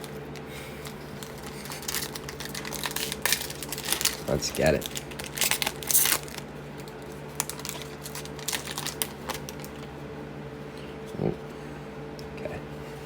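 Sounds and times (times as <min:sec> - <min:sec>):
cards clicking and rustling: 0:00.0 - 0:09.9
wrapper tearing open: 0:00.8 - 0:09.9.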